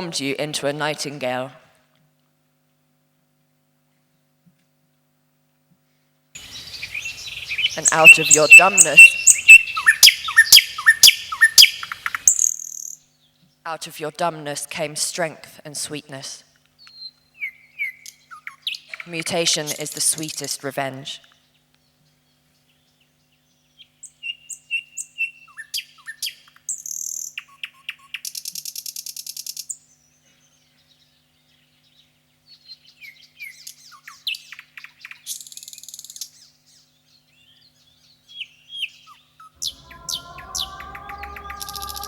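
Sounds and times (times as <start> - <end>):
nightingale singing: 6.4 - 13.4, 16.8 - 20.4, 32.5 - 42.0
electronic music chords: 39.6 - 42.0.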